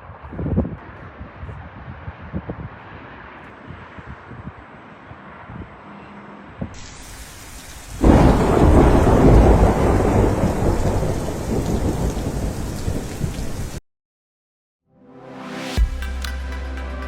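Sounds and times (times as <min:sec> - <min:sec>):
steady rain: 0:06.8 - 0:13.8
thunderclap and rumble: 0:07.0 - 0:13.8.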